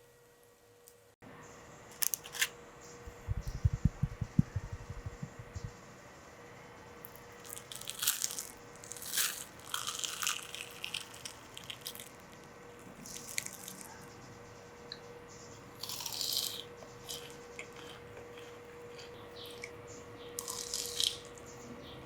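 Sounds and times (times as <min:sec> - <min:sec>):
crunchy chewing: 0:07.4 - 0:14.1, 0:15.7 - 0:19.8, 0:20.4 - 0:21.5.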